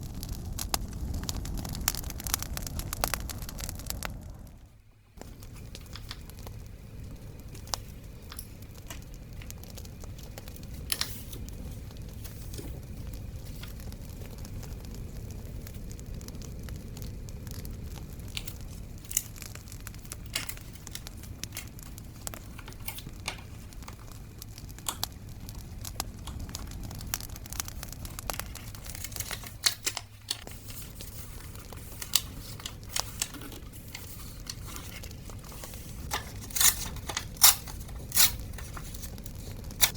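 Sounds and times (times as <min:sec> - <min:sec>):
low rumbling background: 0:00.0 - 0:39.9
sharp crackles: 0:00.0 - 0:39.9
paper crinkling and tearing: 0:18.3 - 0:39.9.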